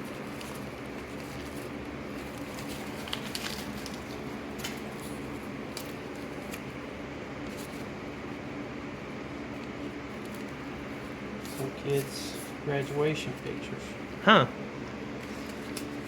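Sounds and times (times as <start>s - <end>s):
steady low hum: 0.0s - 16.0s
objects clicking and rustling: 0.3s - 6.6s.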